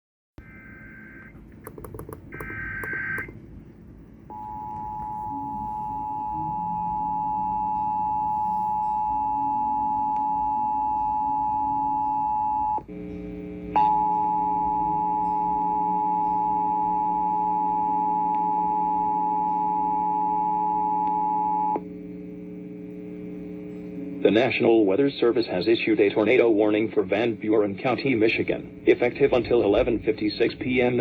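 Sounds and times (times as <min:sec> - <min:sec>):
clicks: 0:01.4 - 0:03.4
buzzy data bursts: 0:21.5 - 0:31.0.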